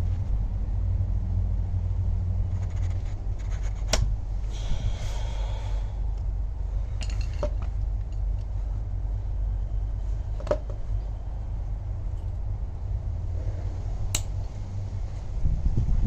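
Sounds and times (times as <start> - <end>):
steady low rumble: 0.0 - 16.0
metal tools clinking: 7.0 - 8.3.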